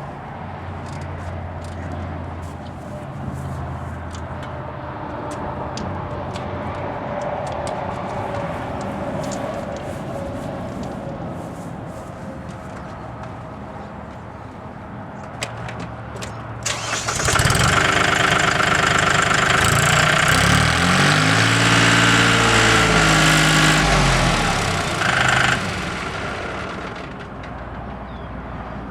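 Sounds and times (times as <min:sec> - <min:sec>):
starter clicks: 0:15.4 - 0:27.6
tractor diesel engine: 0:15.5 - 0:28.2.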